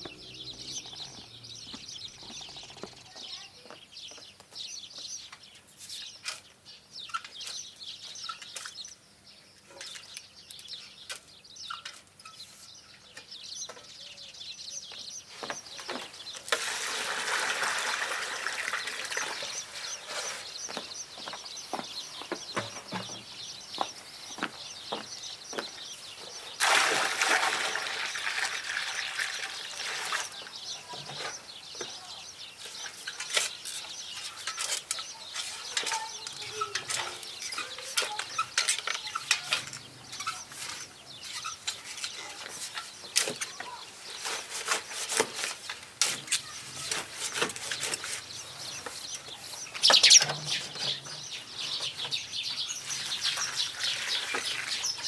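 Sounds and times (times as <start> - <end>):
chickens clucking: 0.0 - 3.8, 15.4 - 26.8, 27.4 - 55.0.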